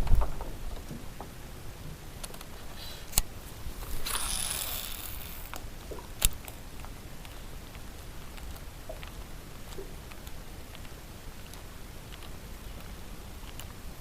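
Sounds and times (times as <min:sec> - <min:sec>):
line hissing off reel: 0:02.8 - 0:05.6
fishing reel click: 0:03.1 - 0:05.6.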